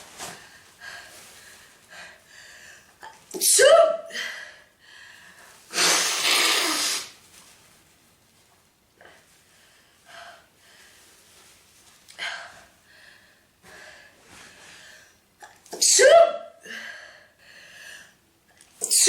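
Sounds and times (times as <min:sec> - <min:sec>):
woman sneezing: 0:03.4 - 0:04.1, 0:05.7 - 0:07.1, 0:15.7 - 0:16.6.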